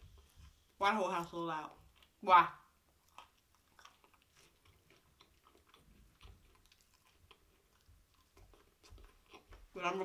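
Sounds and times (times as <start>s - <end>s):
person chewing with mouth clicks: 2.9s - 9.8s.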